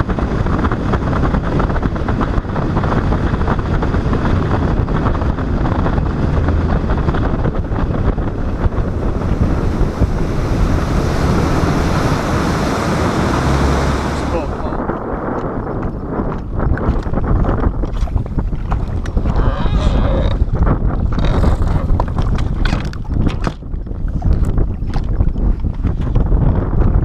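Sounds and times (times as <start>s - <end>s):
wind buffeting microphone: 0.0s - 27.0s
rushing water: 5.7s - 15.0s.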